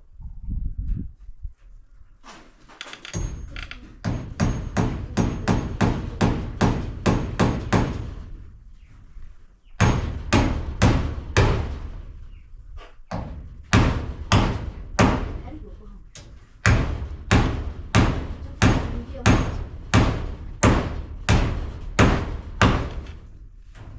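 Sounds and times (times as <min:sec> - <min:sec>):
hammer driving nails: 0:02.8 - 0:08.2, 0:09.8 - 0:11.9, 0:16.6 - 0:23.3.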